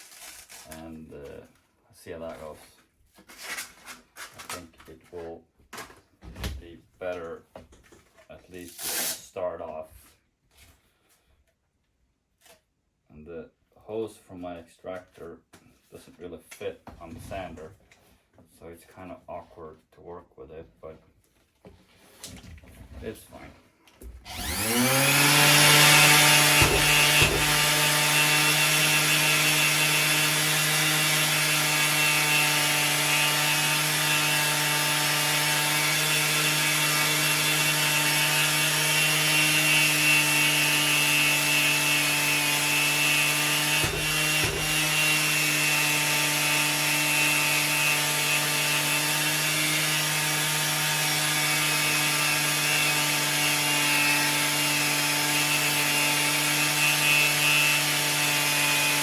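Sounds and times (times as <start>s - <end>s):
orbital sander sanding metal: 24.3s - 59.0s.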